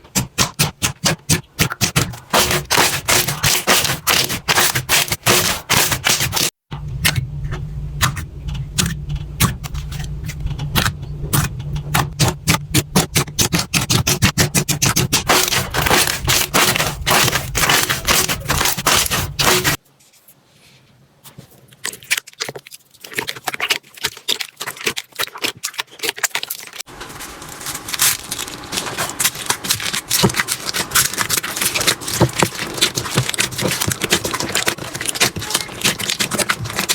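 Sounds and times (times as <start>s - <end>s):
slime crackling and popping: 21.8s - 36.9s.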